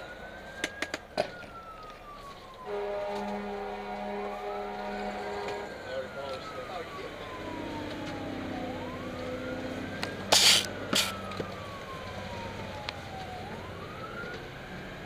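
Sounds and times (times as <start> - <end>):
fire engine siren wailing: 0.0 - 15.0
truck engine drone: 0.0 - 15.0
loud hiss bursts: 10.3 - 11.1.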